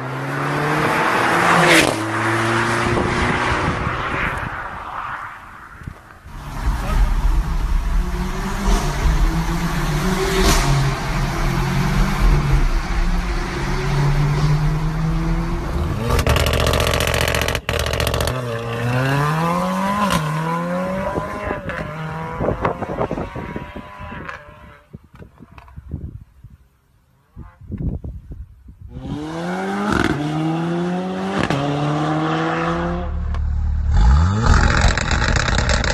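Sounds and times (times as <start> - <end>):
exhaust crackles and pops: 5.4 - 18.6, 33.0 - 35.9
car engine revving: 6.2 - 24.5, 29.0 - 35.9.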